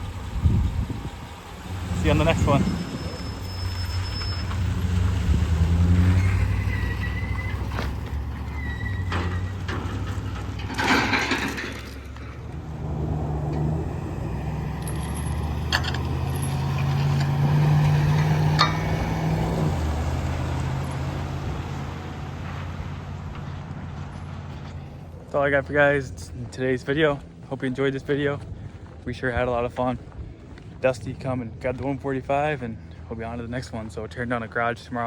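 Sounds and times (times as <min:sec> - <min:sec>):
truck engine running: 0:00.0 - 0:35.0.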